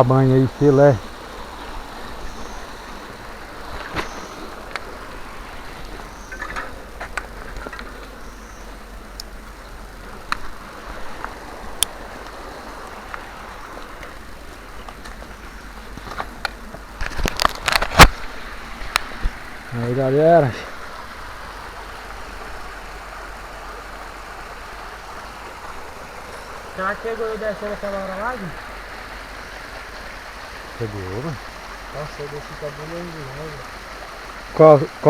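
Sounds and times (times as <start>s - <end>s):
bike ticks and rattles: 3.6s - 23.3s.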